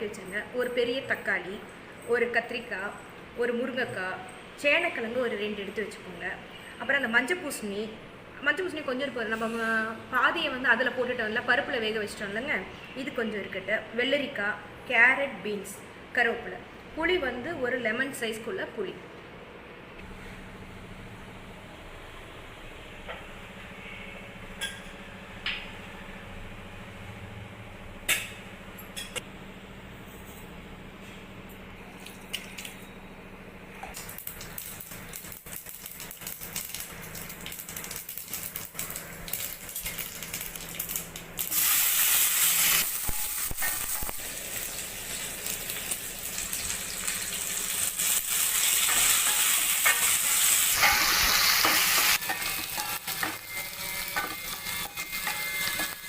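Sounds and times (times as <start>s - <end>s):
food sizzling in a pan: 34.0s - 56.0s.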